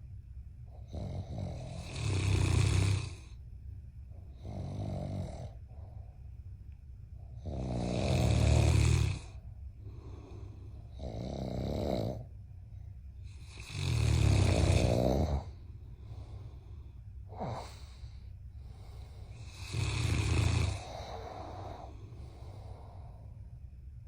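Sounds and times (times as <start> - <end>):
loud snoring: 0.8 - 3.4, 4.4 - 5.6, 7.4 - 12.3, 13.4 - 15.6, 17.3 - 18.0, 19.3 - 22.0.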